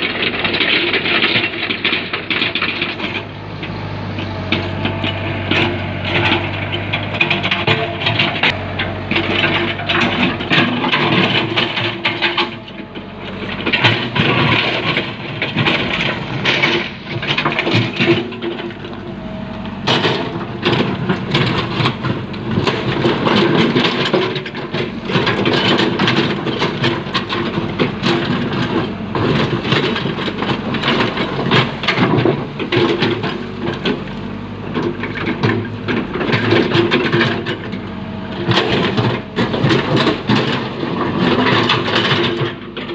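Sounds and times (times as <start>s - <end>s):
backhoe diesel engine under load: 0.0s - 42.9s
digging cracks and knocks: 0.0s - 42.9s.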